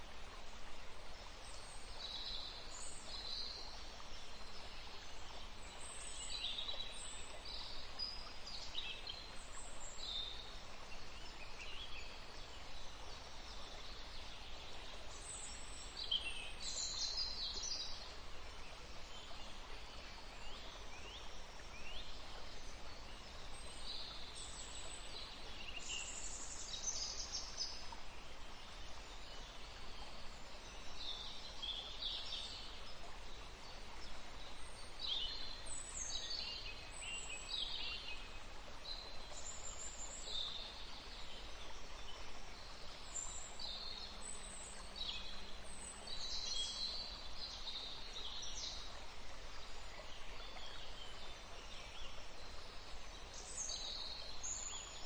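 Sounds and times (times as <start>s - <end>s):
songbirds chirping: 0.0s - 55.0s
steady background hiss: 0.0s - 55.0s.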